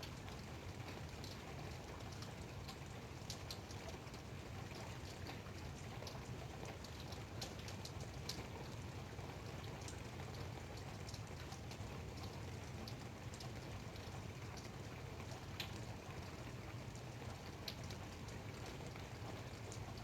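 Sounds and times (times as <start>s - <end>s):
light rain pattering: 0.0s - 20.0s.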